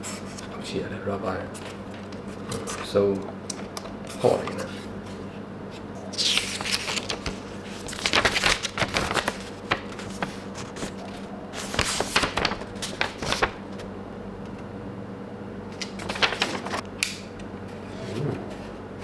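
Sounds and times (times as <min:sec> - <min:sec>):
packaging crinkling and rustling: 0:06.1 - 0:13.9, 0:15.8 - 0:16.8.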